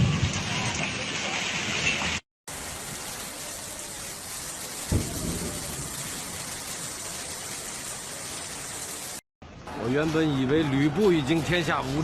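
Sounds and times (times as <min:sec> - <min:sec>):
thunderclap rumbling: 0:00.0 - 0:09.0
heavy rain pouring: 0:00.0 - 0:09.2.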